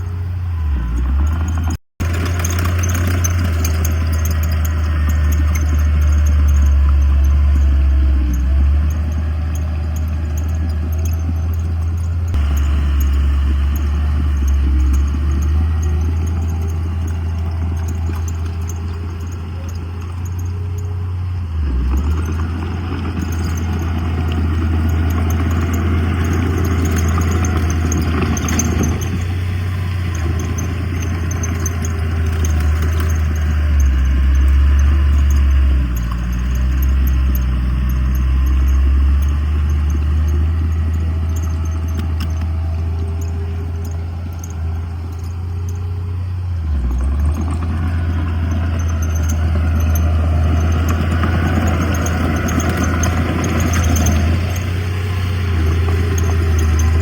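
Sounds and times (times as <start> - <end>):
diesel engine drone: 0.0 - 57.0
rough clattering noise: 0.7 - 57.0.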